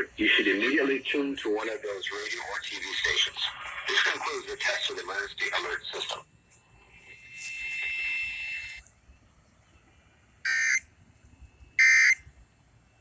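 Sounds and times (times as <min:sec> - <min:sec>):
radio hiss: 0:00.0 - 0:08.8.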